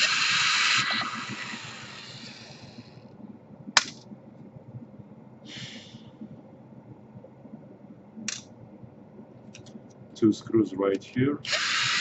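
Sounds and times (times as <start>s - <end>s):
power screwdriver whirring: 0.0s - 2.9s, 11.5s - 12.0s.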